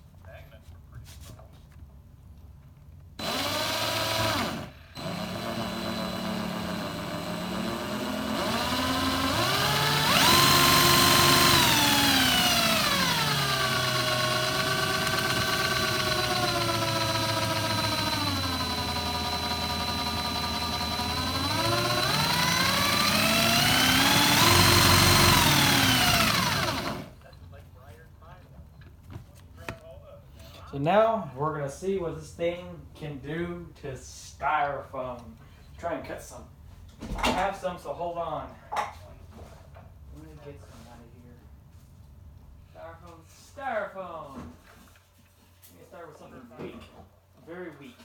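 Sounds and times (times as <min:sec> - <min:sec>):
power drill motor whine: 0:03.2 - 0:27.2.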